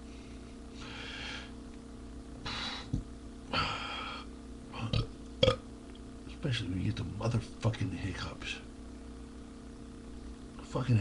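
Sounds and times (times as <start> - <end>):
man breathing heavily: 0.0 - 1.6, 2.4 - 4.3.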